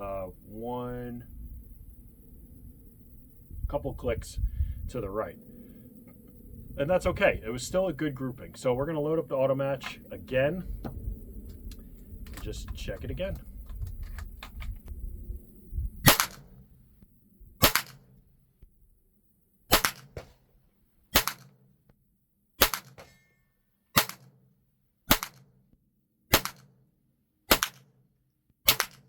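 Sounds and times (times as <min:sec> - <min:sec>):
rifle shots cracking: 0:16.0 - 0:16.6, 0:17.6 - 0:18.1, 0:19.7 - 0:20.4, 0:21.1 - 0:21.5, 0:22.6 - 0:23.2, 0:24.0 - 0:24.3, 0:25.1 - 0:25.4, 0:26.3 - 0:26.7, 0:27.5 - 0:27.8, 0:28.7 - 0:29.0.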